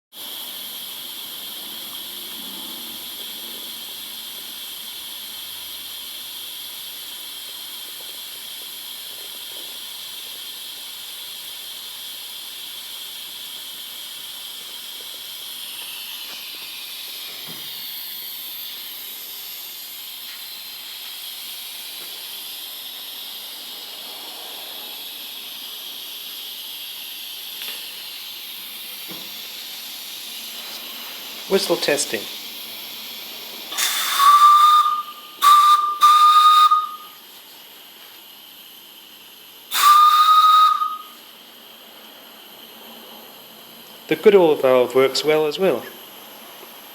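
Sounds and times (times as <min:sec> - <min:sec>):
small steam whistle blowing: 0:33.7 - 0:37.4, 0:39.6 - 0:41.5.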